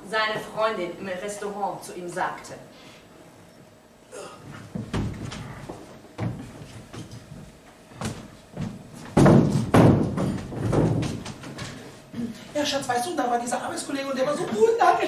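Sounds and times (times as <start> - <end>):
knocks and thuds: 4.7 - 7.2, 8.0 - 11.5.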